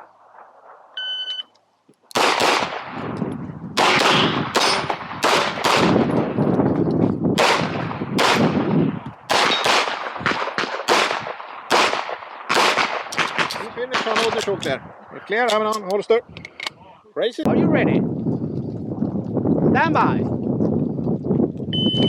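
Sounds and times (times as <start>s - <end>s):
handgun firing rapid shots: 2.1s - 2.8s, 3.8s - 6.1s, 7.4s - 8.6s, 9.3s - 14.4s
shot timer beep: 21.7s - 22.0s.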